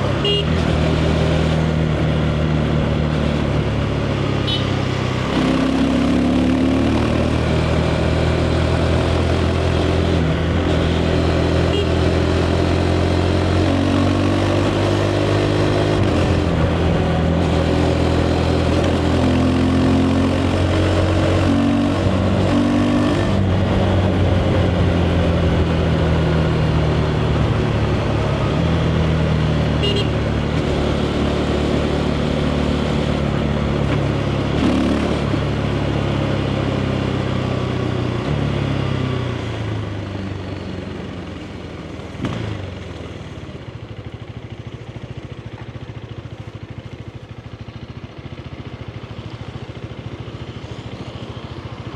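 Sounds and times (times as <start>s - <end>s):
motorcycle engine shifting gears: 0.0s - 40.0s
wind and road noise: 0.0s - 51.9s.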